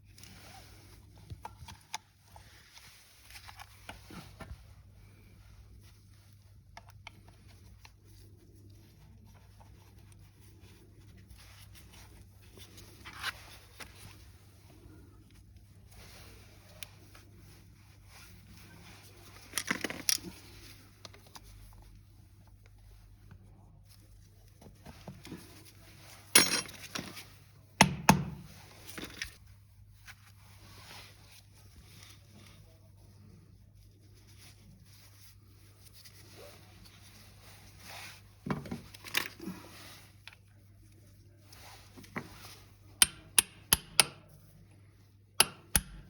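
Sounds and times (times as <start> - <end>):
parts scraping and clicking: 41.9 - 44.4, 45.4 - 46.0.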